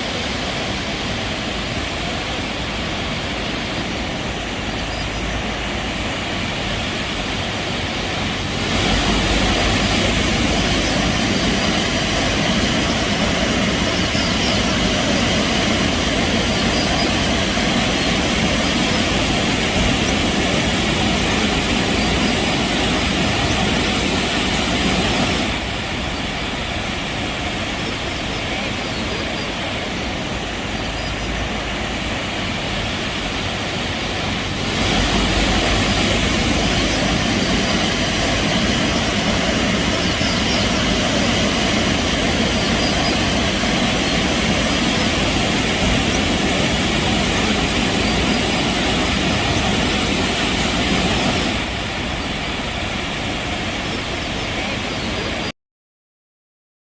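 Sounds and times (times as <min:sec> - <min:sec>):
waterfall rushing: 0:00.0 - 0:55.5.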